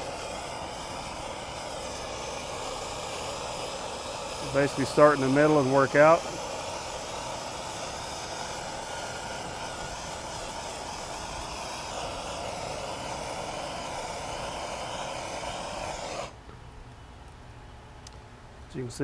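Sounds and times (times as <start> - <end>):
torch flame blowing: 0.0 - 16.4.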